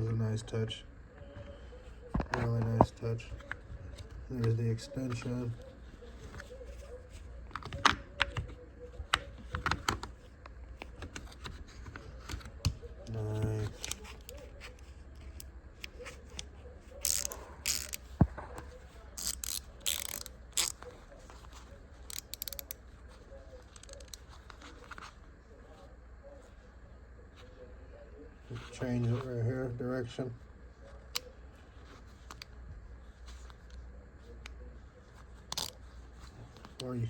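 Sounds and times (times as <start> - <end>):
ratcheting screwdriver clicking: 17.0 - 18.0, 19.2 - 20.8, 22.1 - 22.8.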